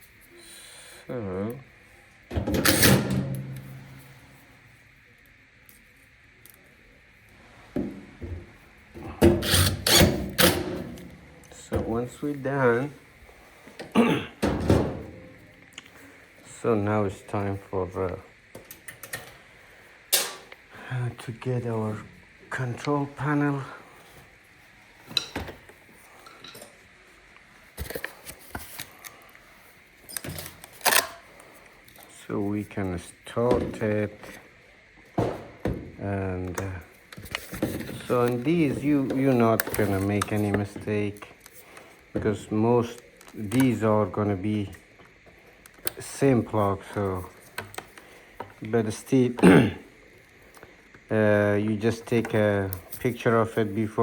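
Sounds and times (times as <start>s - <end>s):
dryer parts knocking: 2.3s - 4.3s, 7.7s - 12.1s, 13.8s - 15.5s, 35.1s - 36.0s
loud scraping rubs: 9.2s - 11.0s.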